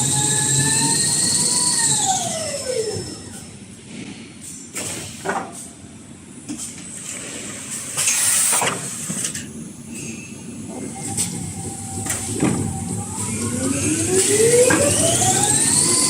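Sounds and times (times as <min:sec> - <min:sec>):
rewinding machine running: 0:00.0 - 0:03.3, 0:11.0 - 0:16.0
air hissing: 0:07.9 - 0:09.1.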